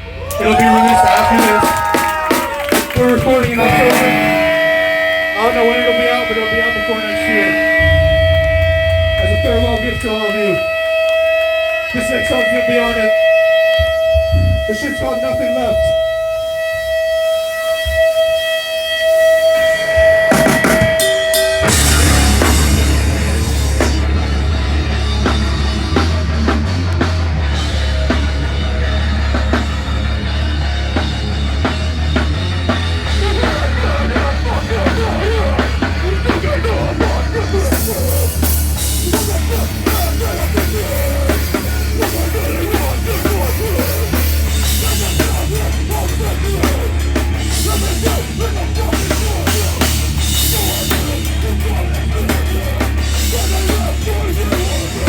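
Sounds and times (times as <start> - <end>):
heavy band playing: 0.0 - 55.0
held ringing tone: 3.5 - 11.4.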